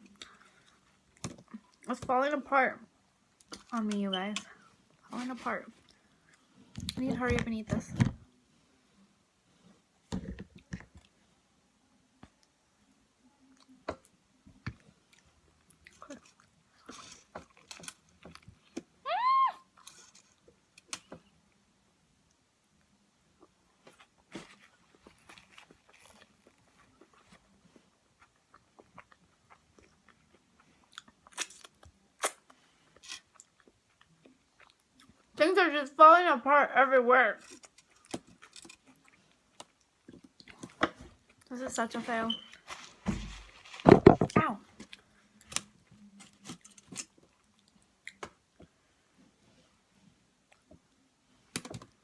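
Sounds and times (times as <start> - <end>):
person chewing: 24.8 - 35.3, 37.6 - 41.5.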